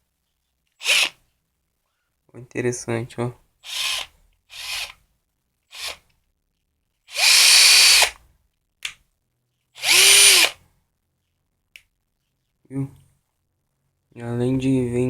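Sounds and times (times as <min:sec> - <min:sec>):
cordless drill motor whine: 0:00.8 - 0:01.1, 0:07.2 - 0:08.2, 0:09.8 - 0:10.6
drill trigger click: 0:07.2 - 0:08.1, 0:09.8 - 0:10.6.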